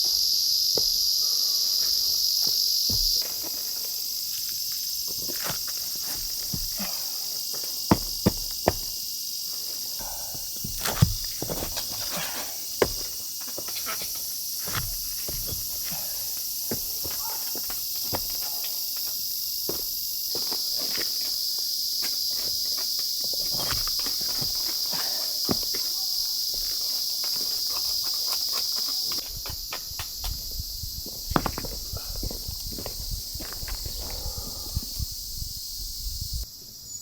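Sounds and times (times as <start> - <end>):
high-pitched insect chorus: 0.0 - 37.0
bricks knocking and scraping: 7.9 - 9.0, 10.6 - 12.1, 31.3 - 32.9.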